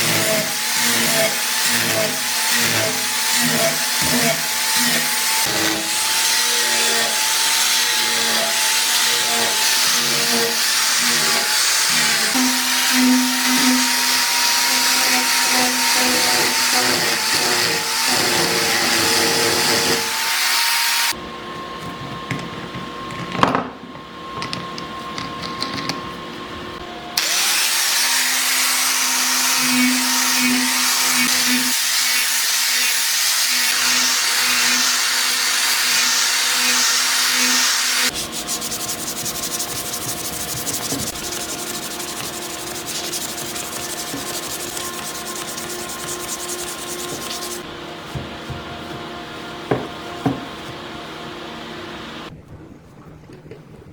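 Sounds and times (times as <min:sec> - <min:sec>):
power tool grinding steel: 0:00.0 - 0:21.2, 0:27.2 - 0:47.7.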